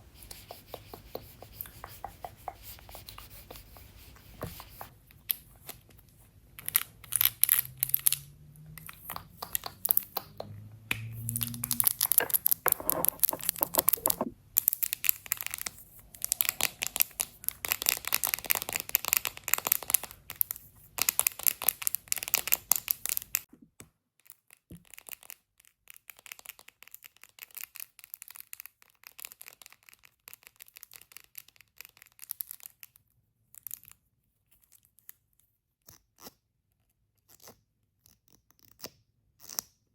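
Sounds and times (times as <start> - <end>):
makeup items crinkling and tapping: 11.8 - 14.3.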